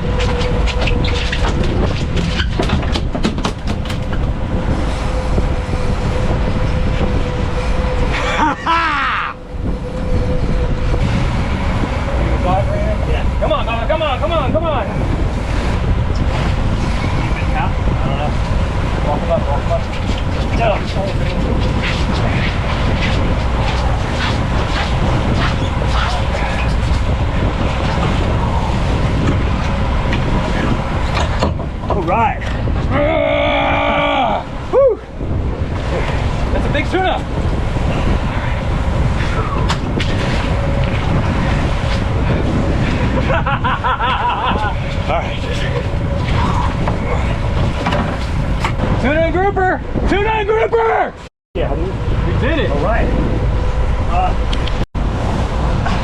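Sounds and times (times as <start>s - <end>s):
boat outboard engines rumbling: 0.0s - 56.0s
wind: 0.0s - 56.0s
water splashing and spray: 9.4s - 32.7s, 33.8s - 43.5s.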